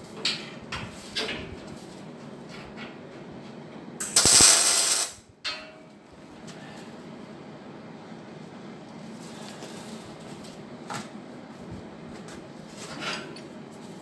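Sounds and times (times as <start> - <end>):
workshop background noise: 4.0 - 5.6.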